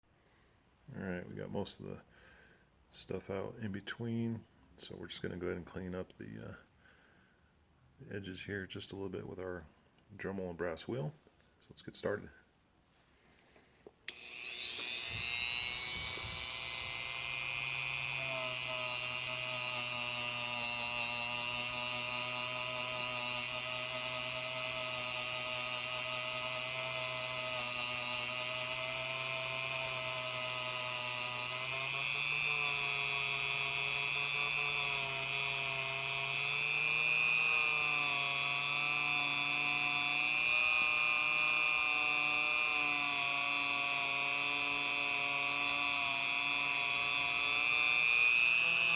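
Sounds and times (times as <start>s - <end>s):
rotary tool whining: 14.0s - 48.9s.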